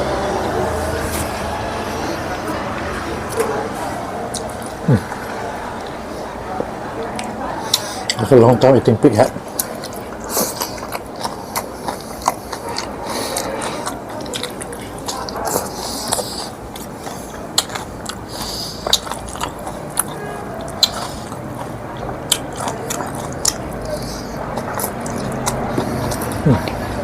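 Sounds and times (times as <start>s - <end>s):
mouth clicks and smacks: 3.2s - 8.3s, 9.3s - 27.0s
person chewing and biting: 4.3s - 5.9s, 9.5s - 27.0s.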